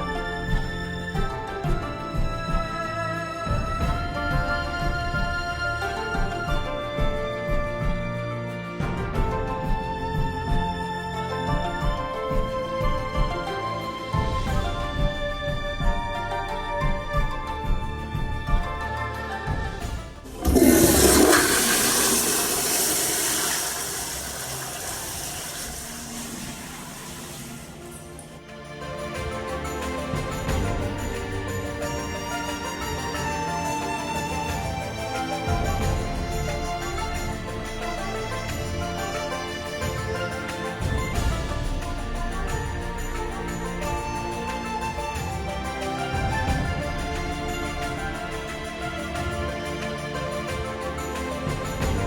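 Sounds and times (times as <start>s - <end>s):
background music with held chords: 0.0s - 52.0s
toilet flushing: 19.5s - 32.6s.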